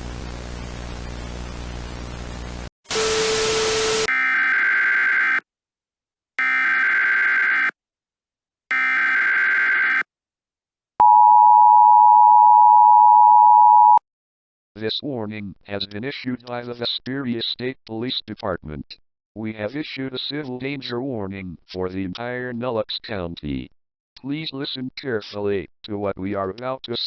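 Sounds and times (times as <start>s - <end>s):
harsh noise burst with low hum: 0.0s - 2.7s
two-tone attention signal: 11.0s - 14.0s.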